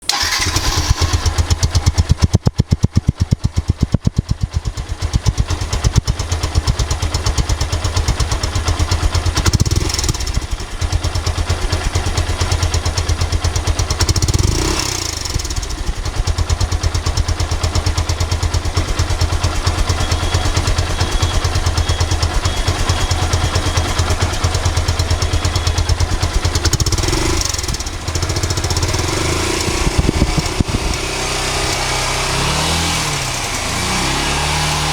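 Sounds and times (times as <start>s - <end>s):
motorcycle engine idling: 0.0s - 34.9s
throttle blips: 2.1s - 6.2s.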